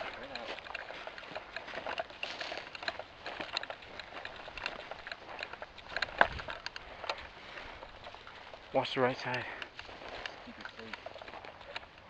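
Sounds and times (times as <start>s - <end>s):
small clicks: 0.0s - 12.0s.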